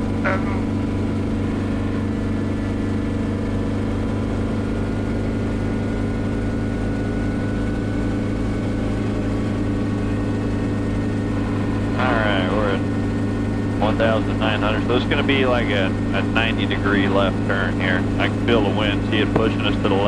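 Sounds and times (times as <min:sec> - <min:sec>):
helicopter engine and rotors droning: 0:00.0 - 0:20.0.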